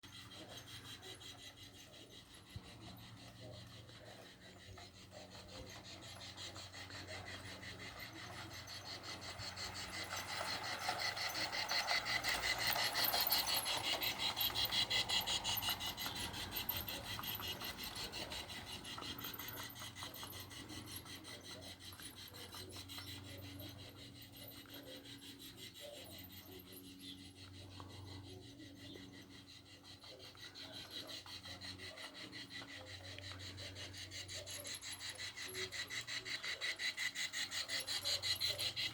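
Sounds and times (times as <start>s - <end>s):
small train passing: 0.0s - 38.9s.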